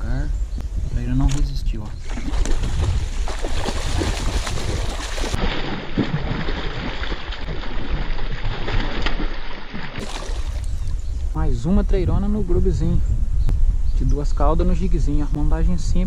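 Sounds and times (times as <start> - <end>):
wind rumbling on microphone: 0.0 - 16.0
water splashing and churning: 2.0 - 11.0.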